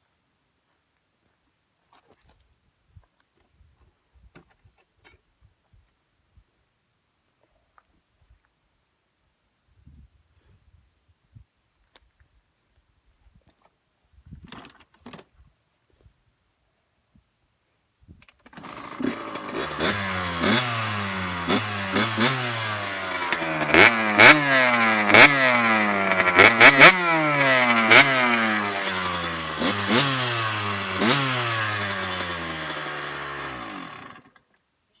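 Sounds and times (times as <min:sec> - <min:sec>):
exhaust cracks: 0:18.6 - 0:34.1
dirt bike engine revving: 0:18.6 - 0:34.3.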